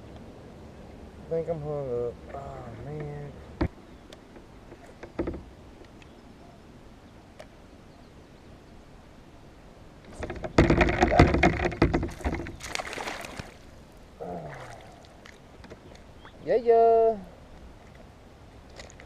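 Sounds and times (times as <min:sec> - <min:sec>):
water splashing against kayak: 0:10.1 - 0:16.4.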